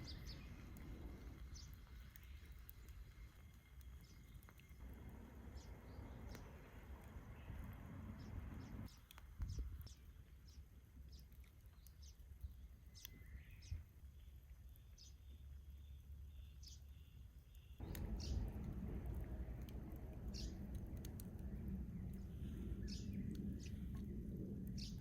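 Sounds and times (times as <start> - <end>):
low steady rumble: 0.0 - 9.0, 17.8 - 25.0
small birds chirping: 0.0 - 25.0.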